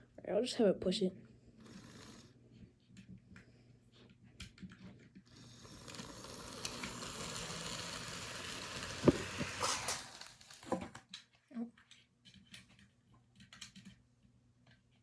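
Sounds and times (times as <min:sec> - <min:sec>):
model train motor and gears: 0:01.6 - 0:02.3, 0:05.3 - 0:10.9.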